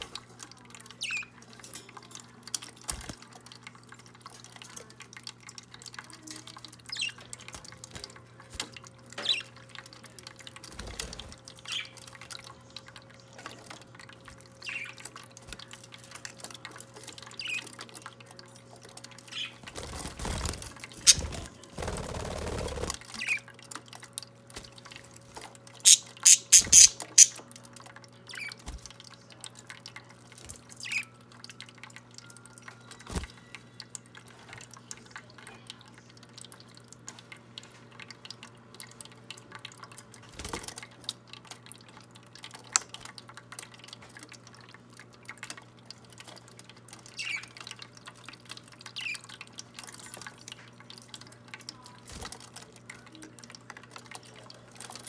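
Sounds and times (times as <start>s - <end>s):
water fountain trickling: 0.0s - 55.0s
parakeets chirping: 1.0s - 1.3s, 25.8s - 27.4s.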